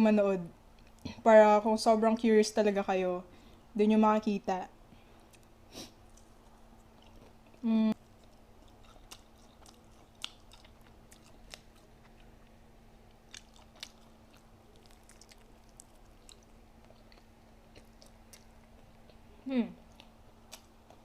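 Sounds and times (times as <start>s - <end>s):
faint steady hum: 0.0s - 21.0s
person chewing food: 5.2s - 21.0s.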